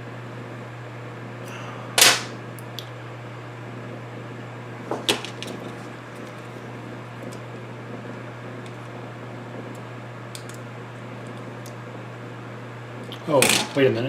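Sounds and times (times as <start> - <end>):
steady low hum: 0.0 - 14.0
knocks on workbench: 4.9 - 5.2.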